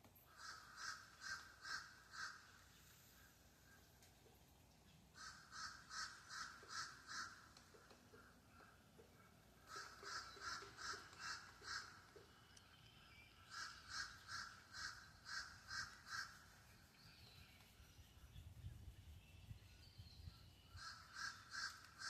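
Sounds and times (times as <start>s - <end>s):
distant crows cawing: 0.2s - 3.0s, 5.1s - 12.5s, 13.4s - 16.5s, 20.8s - 22.0s.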